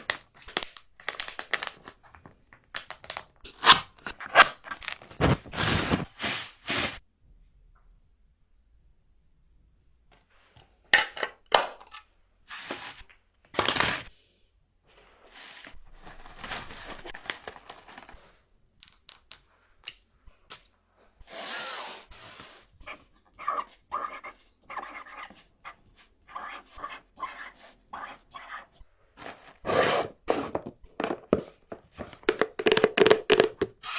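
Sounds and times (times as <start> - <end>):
packaging rustling and tearing: 0.0 - 2.1, 2.7 - 7.0, 15.9 - 18.2.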